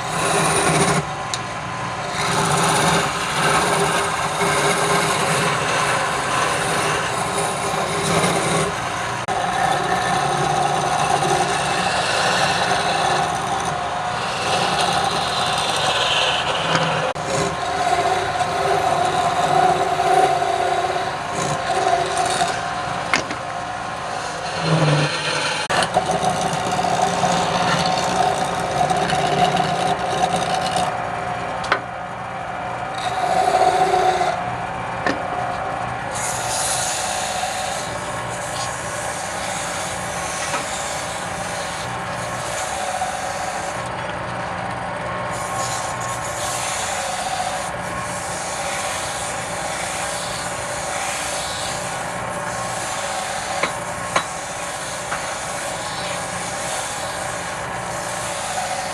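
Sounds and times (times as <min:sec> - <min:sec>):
turning tool scraping wood: 0:00.0 - 0:01.3, 0:02.0 - 0:23.4, 0:24.1 - 0:30.9, 0:33.0 - 0:44.2, 0:45.3 - 0:58.9
wood lathe motor hum: 0:00.0 - 0:58.9.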